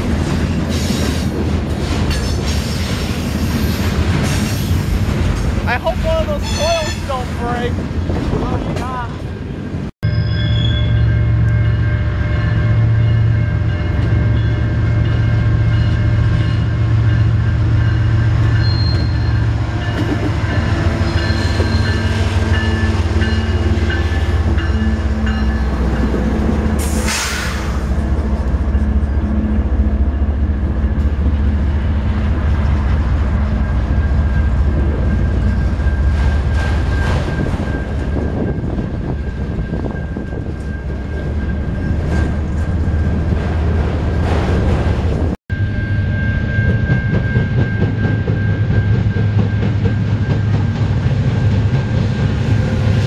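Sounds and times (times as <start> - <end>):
freight train rumbling past: 0.0 - 53.0.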